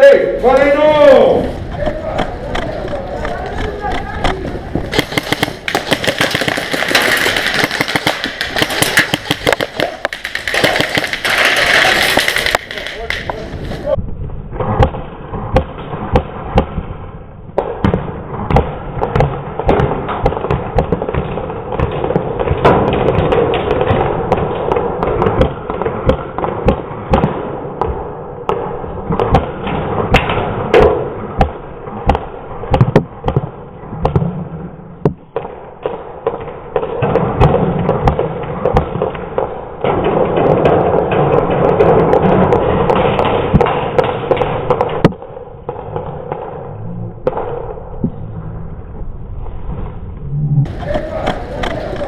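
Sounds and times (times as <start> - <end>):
footsteps: 0.0 - 14.0, 49.0 - 52.0.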